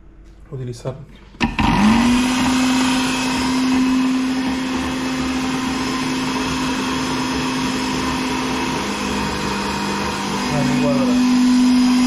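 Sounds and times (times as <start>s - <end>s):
electric blender motor running: 1.4s - 12.0s.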